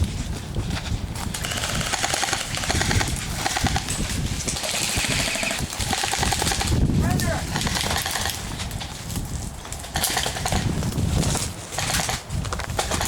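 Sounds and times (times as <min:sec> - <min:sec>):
airsoft guns firing bursts: 0:01.3 - 0:08.6, 0:09.9 - 0:10.8, 0:11.7 - 0:12.2, 0:12.8 - 0:13.0.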